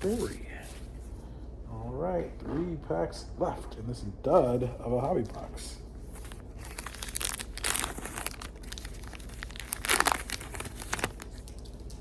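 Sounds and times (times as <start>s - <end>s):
wrapper being torn and crinkled: 6.2s - 12.0s.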